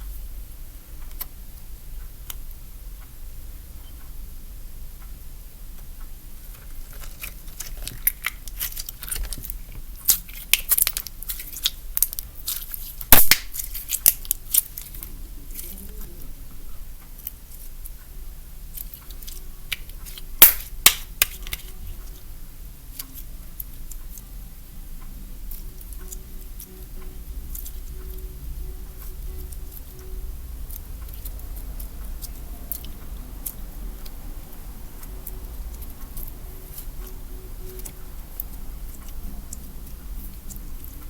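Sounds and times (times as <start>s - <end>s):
slime popping and crackling: 6.8s - 15.9s, 18.7s - 21.8s.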